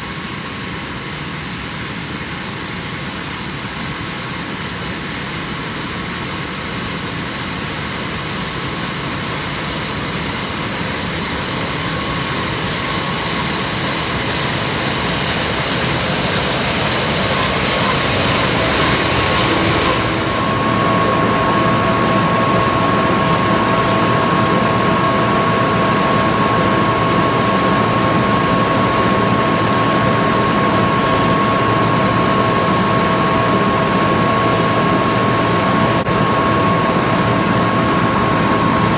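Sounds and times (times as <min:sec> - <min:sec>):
steady machine whine: 0:00.0 - 0:38.9
cotton picker droning: 0:10.3 - 0:38.9.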